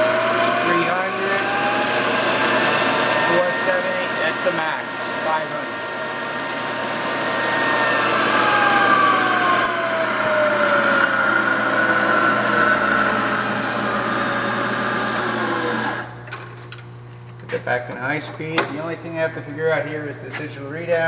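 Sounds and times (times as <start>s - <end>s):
milling machine motor whining: 0.0s - 16.4s.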